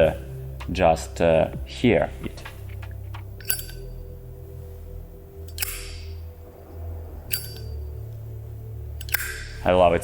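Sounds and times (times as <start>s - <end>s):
lighter lid metallic clicks: 3.4s - 3.9s, 5.5s - 6.1s, 7.3s - 7.8s, 9.0s - 9.5s.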